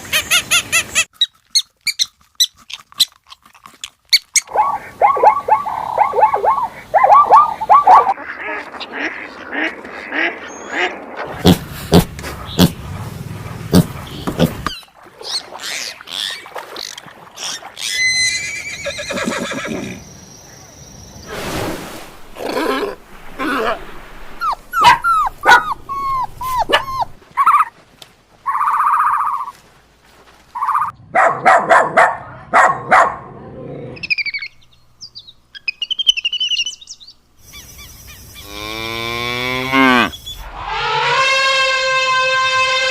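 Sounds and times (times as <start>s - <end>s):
farm animal calls: 24.4s - 27.8s, 28.4s - 29.6s, 30.6s - 31.0s.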